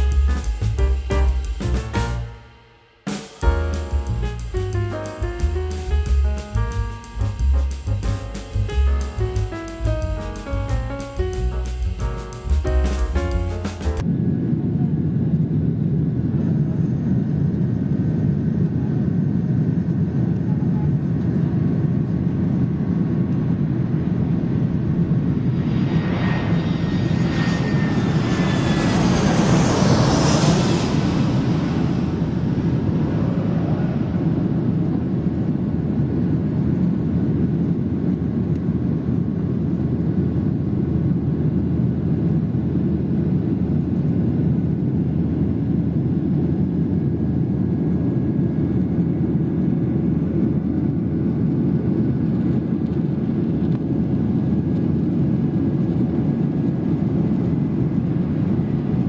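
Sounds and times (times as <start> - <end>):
jet engine rumble: 0.0 - 59.0
high jet engine whine: 13.5 - 59.0.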